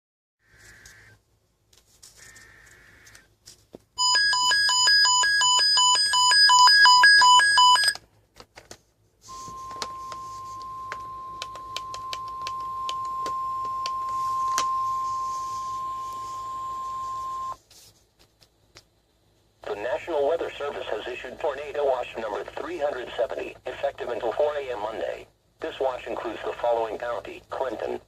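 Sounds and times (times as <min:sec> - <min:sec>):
faint radio crackle: 0:08.5 - 0:18.8, 0:19.6 - 0:28.0.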